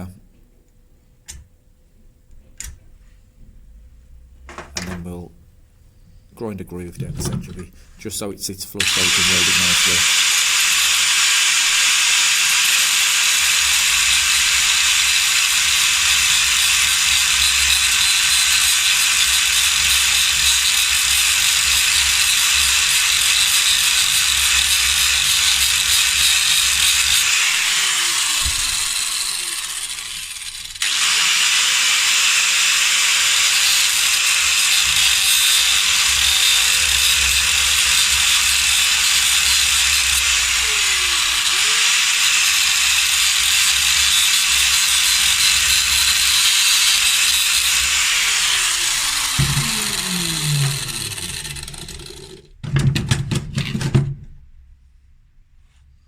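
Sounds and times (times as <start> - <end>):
angle grinder grinding steel: 8.8 - 52.5.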